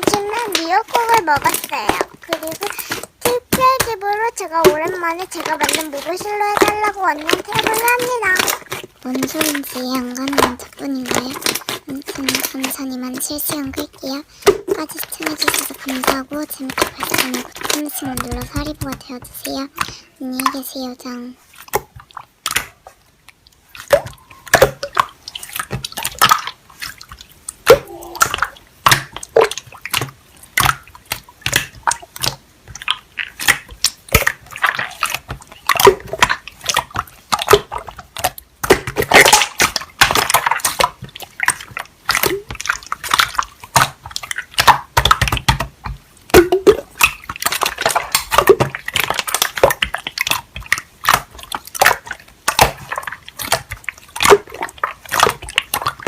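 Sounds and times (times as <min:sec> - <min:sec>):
slime sticky clicks and wet pops: 0:21.5 - 0:56.0.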